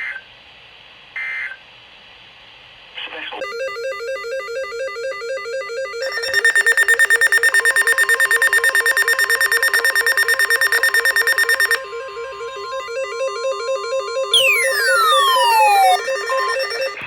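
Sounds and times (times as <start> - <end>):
rapid electronic alert beeping: 3.4 - 17.0
steady warning tone: 3.4 - 17.0
background music: 3.5 - 17.0.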